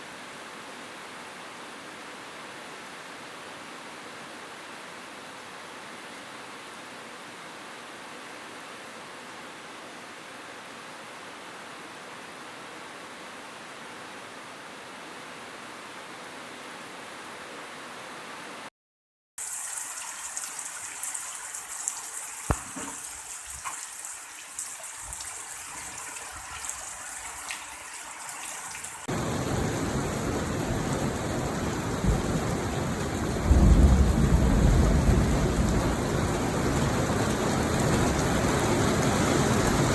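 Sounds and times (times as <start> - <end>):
heavy pouring rain: 19.4 - 39.9
rain hissing with drop ticks: 19.4 - 39.9.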